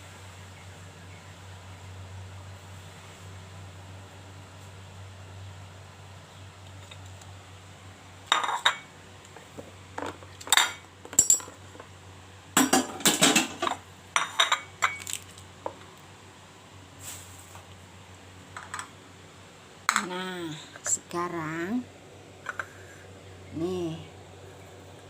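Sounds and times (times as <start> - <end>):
utensils and dishes clattering: 8.3 - 8.9, 10.0 - 11.9, 12.6 - 15.2.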